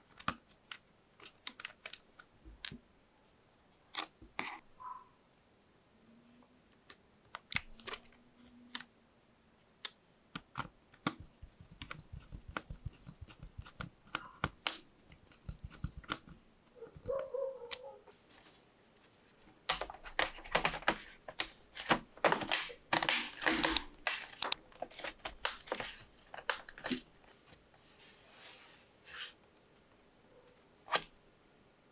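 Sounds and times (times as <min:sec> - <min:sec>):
small clicks and taps: 0:09.8 - 0:16.4, 0:19.7 - 0:27.0
rustling: 0:18.1 - 0:29.8.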